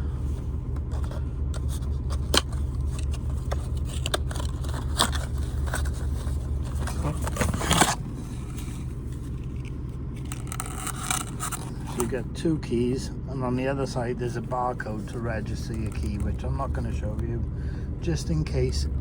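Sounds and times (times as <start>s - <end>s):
low hum: 0.0s - 19.0s
packaging crinkling: 0.8s - 12.1s, 15.0s - 16.3s.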